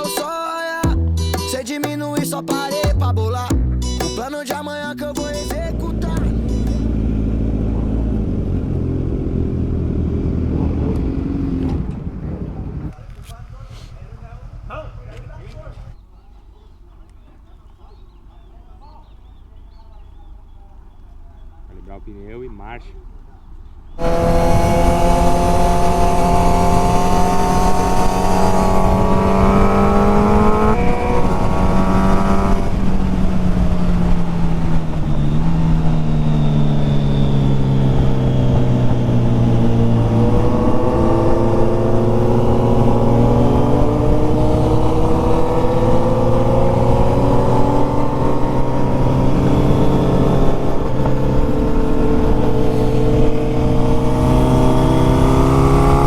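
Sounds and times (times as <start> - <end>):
motorcycle engine accelerating: 0.8 - 16.0, 19.3 - 56.0.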